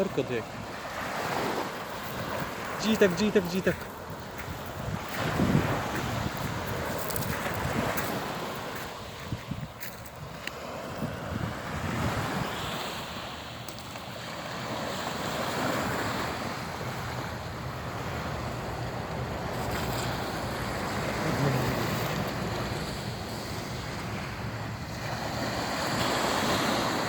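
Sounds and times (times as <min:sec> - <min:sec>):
wind buffeting microphone: 0:00.0 - 0:13.4
sea waves washing on shore: 0:00.0 - 0:27.0.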